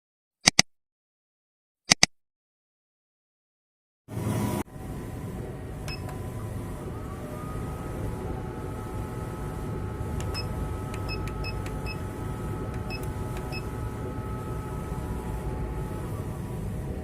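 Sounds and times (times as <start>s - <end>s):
cutting plotter motor whine: 4.1s - 17.0s.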